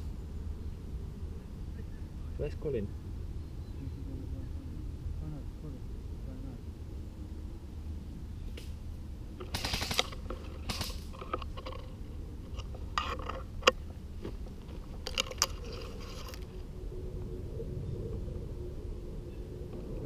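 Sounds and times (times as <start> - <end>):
low rumble: 0.0 - 20.0
rustling and crunching of brush: 9.4 - 16.7.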